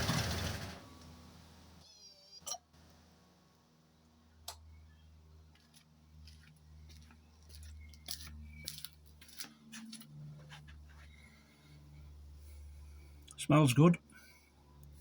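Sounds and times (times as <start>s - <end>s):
two-stroke engine idling: 0.0s - 1.6s.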